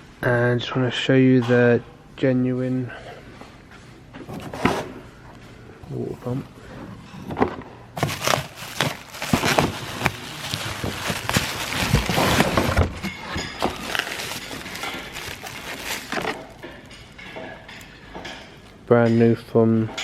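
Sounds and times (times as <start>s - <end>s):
packaging crackling and rustling: 8.0s - 17.9s.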